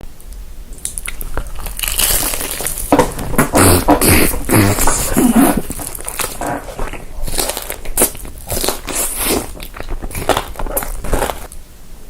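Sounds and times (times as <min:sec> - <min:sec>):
crunchy chewing: 0:00.7 - 0:11.6.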